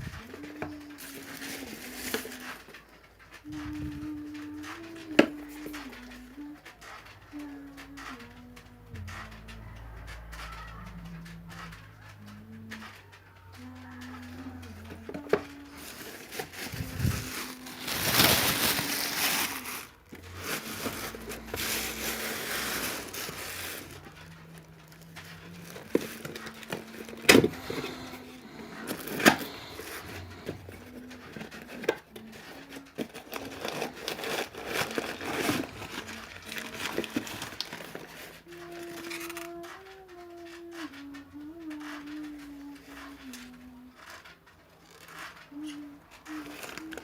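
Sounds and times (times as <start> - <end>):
packaging crinkling and rustling: 0.0 - 47.0.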